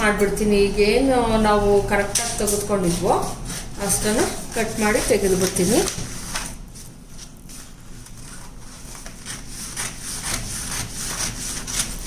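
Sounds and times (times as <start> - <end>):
scissors snipping paper: 9.0 - 12.0.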